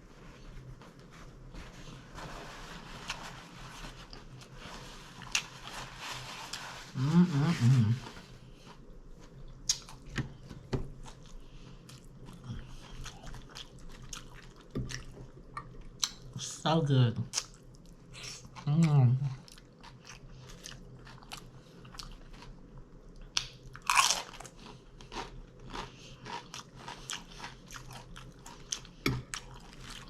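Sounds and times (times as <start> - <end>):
person humming: 6.9 - 8.1
person chewing food: 8.0 - 16.4, 19.3 - 30.0.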